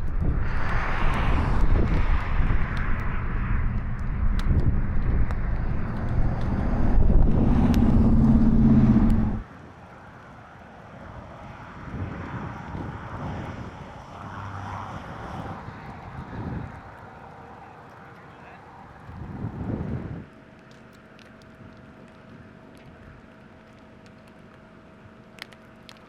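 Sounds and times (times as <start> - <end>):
wind noise: 0.0 - 9.5, 10.9 - 17.6, 18.8 - 20.3
vehicle engine and road noise: 0.0 - 20.3.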